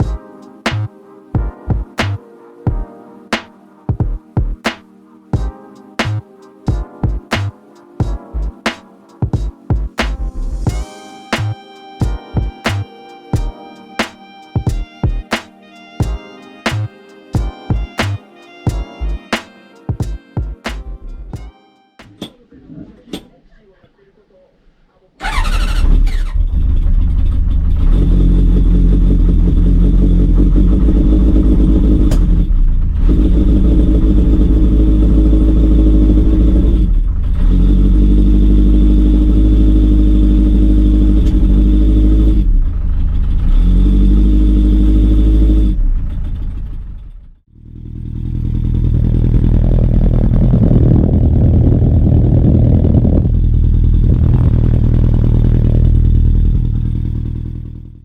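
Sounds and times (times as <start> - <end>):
motorcycle engine revving: 25.2 - 58.0.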